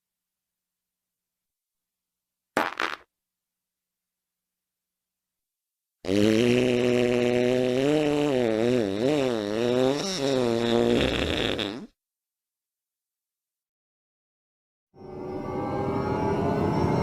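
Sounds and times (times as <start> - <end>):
fart sound effect: 2.6 - 3.1, 6.1 - 11.9.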